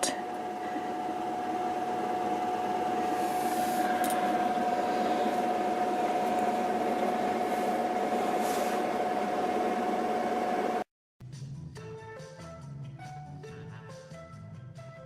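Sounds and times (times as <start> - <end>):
mechanical hum with steady tone: 0.0 - 10.9.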